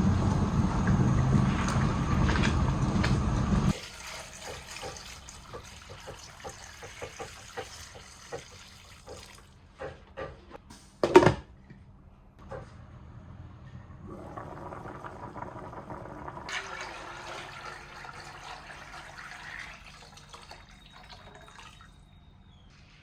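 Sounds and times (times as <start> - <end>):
water running: 0.0 - 9.6, 14.1 - 22.1.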